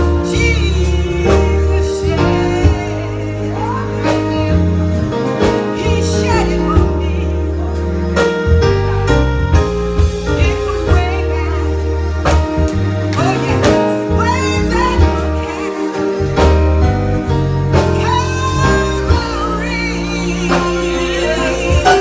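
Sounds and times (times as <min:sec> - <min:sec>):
bass line: 0:00.0 - 0:22.0
gospel singing: 0:00.0 - 0:22.0
drum beats: 0:08.2 - 0:22.0.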